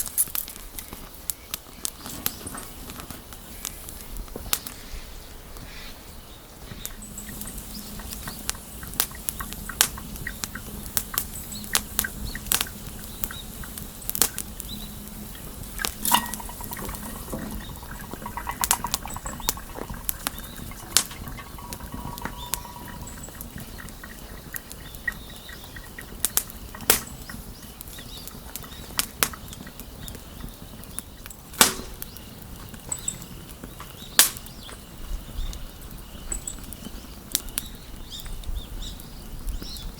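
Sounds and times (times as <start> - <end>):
wood fire crackling: 6.8 - 37.7
sharp pops and snaps: 15.6 - 30.2, 31.0 - 34.8.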